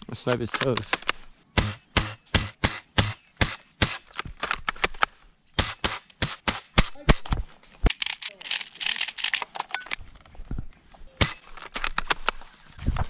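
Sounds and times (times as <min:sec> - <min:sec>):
airsoft gun shots: 0:01.6 - 0:04.1, 0:05.6 - 0:07.4.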